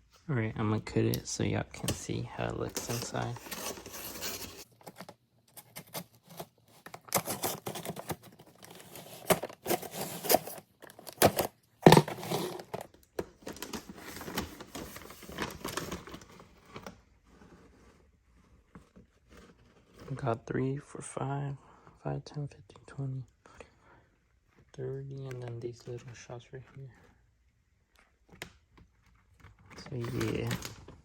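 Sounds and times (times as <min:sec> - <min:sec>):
wrapping crinkling and tearing: 0:01.8 - 0:20.2, 0:29.4 - 0:31.0.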